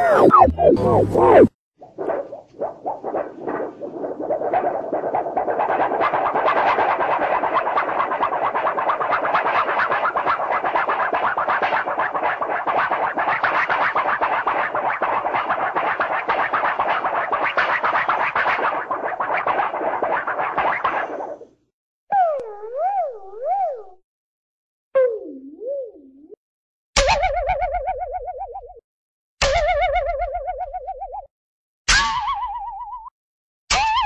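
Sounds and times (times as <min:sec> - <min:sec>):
cartoon warble fluttering rattle: 0:00.0 - 0:21.6.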